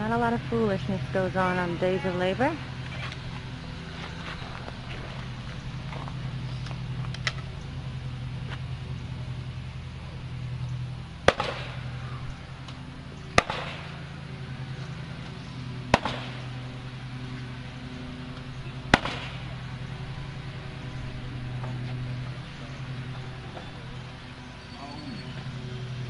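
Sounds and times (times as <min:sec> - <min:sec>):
engine hum: 0:00.0 - 0:26.0
nail gun firing: 0:11.3 - 0:11.7, 0:13.4 - 0:13.8, 0:15.9 - 0:16.3, 0:18.9 - 0:19.4.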